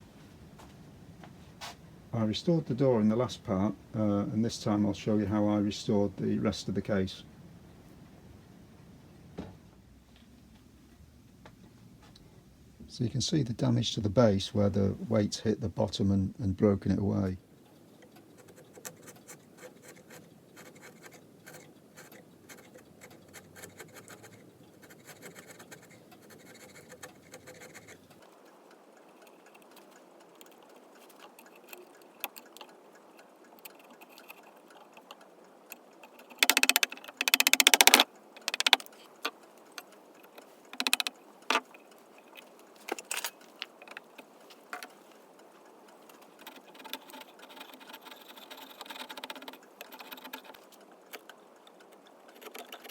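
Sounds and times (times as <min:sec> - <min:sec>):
light clicks and knocks: 0:17.6 - 0:52.9.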